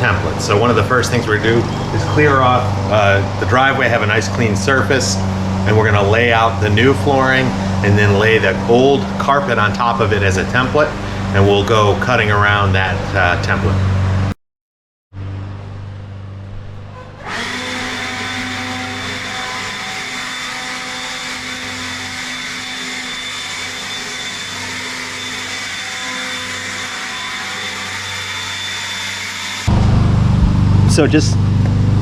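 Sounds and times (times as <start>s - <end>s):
small electric motor whining: 0.2s - 9.0s, 16.7s - 29.7s.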